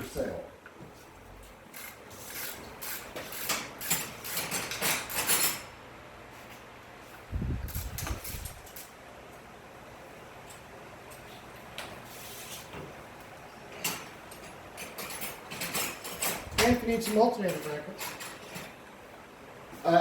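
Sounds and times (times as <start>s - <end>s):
metal tools clinking and rattling: 1.8s - 5.7s, 13.7s - 18.8s.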